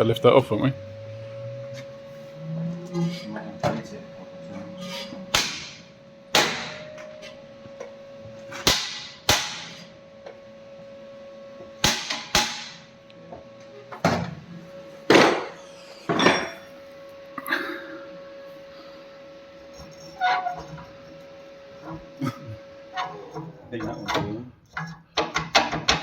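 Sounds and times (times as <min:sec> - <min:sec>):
hammer striking steel: 0:05.3 - 0:07.1, 0:08.5 - 0:09.8, 0:11.8 - 0:12.9.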